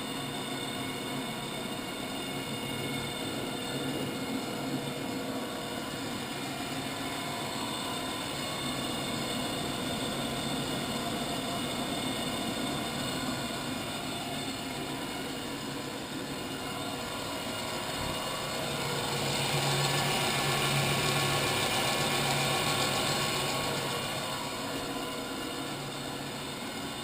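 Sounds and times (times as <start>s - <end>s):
grinder humming: 5.8s - 27.0s.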